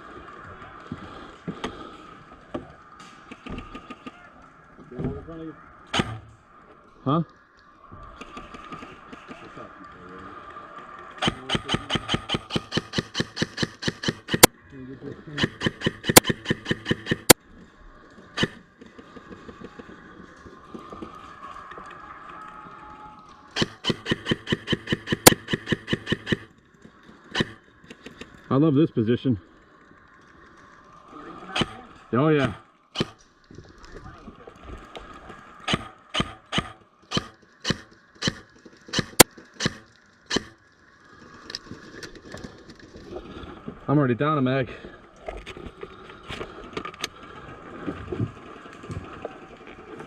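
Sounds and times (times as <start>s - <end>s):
airsoft gun firing: 5.9s - 6.2s, 11.2s - 14.5s, 15.4s - 17.4s, 23.6s - 26.5s, 35.7s - 40.5s
airsoft rifle firing single shots: 5.9s - 6.2s, 35.7s - 40.5s
loud crack: 11.2s - 14.5s.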